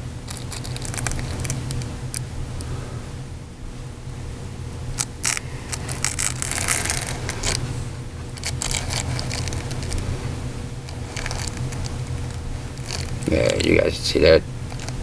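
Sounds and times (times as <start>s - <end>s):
steady low hum: 0.0s - 15.0s
handling clicks and scrapes: 0.2s - 2.3s, 5.0s - 10.1s, 10.8s - 13.7s, 14.7s - 15.0s.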